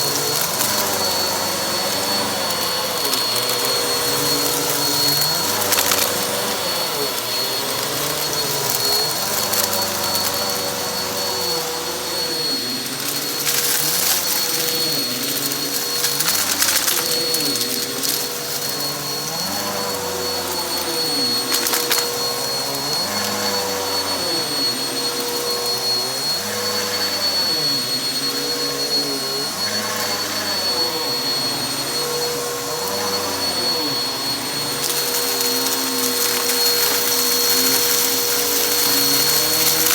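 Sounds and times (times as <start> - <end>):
vacuum cleaner on carpet: 0.0 - 39.9
debris crackling in vacuum: 12.5 - 23.4, 34.2 - 39.9.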